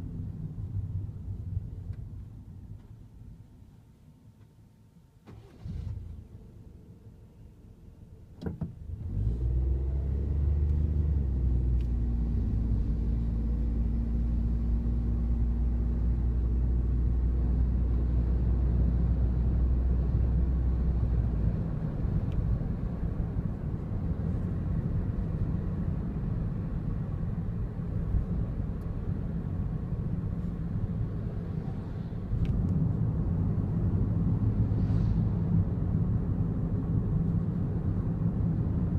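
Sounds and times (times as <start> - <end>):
car engine starting and rumbling: 5.2 - 38.9
click: 32.4 - 32.8.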